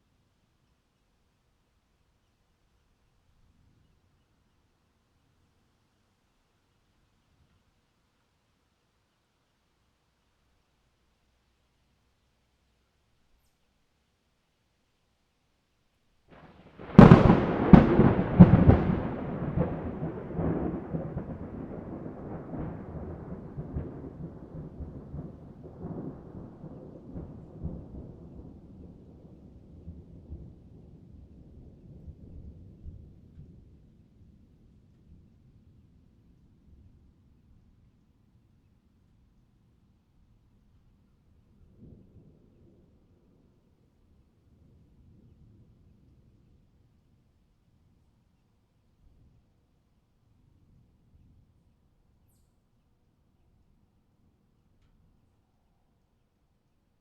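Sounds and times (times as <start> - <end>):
thunder crack and rumble: 16.4 - 35.1.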